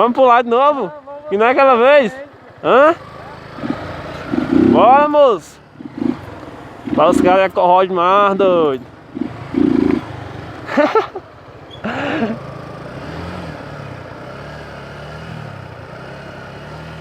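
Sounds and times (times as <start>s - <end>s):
small motorcycle engine: 2.5s - 17.0s
person calling out: 3.6s - 6.2s, 6.9s - 7.4s.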